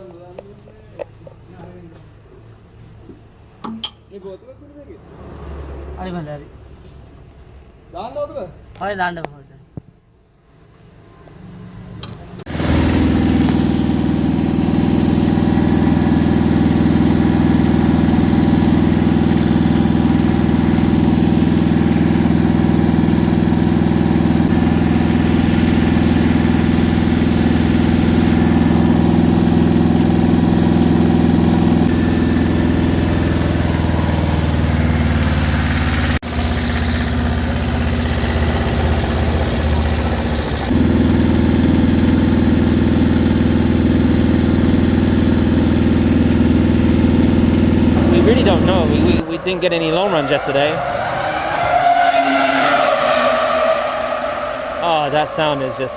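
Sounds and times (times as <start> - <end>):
car engine starting: 12.0 - 55.9
car engine idling: 12.5 - 55.9.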